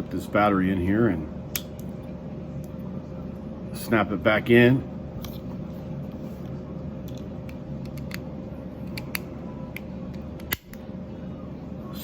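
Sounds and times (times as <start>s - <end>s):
steady low hum: 0.0s - 12.0s
sharp plastic snap: 10.4s - 10.8s.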